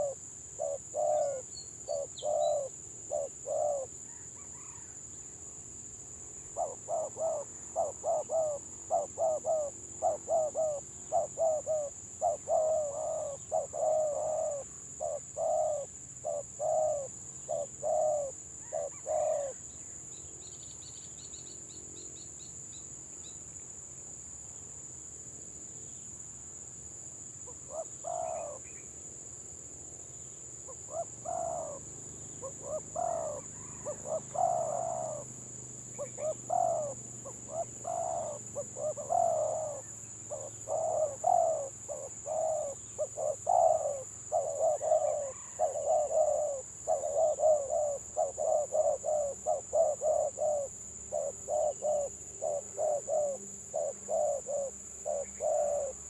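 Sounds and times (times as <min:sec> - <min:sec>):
doves cooing: 0:00.0 - 0:04.8, 0:06.5 - 0:19.6, 0:27.8 - 0:28.6, 0:30.9 - 0:56.0
faint high chirping: 0:00.0 - 0:05.0.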